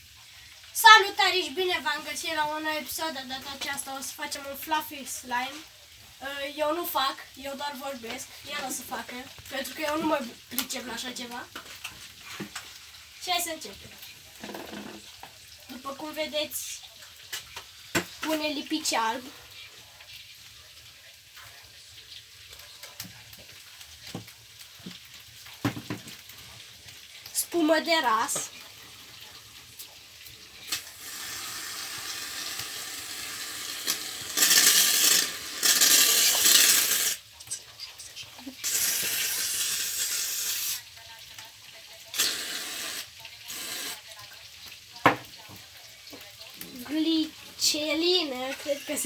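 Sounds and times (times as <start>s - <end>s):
aerosol can spraying: 33.9s - 37.2s, 42.2s - 44.0s.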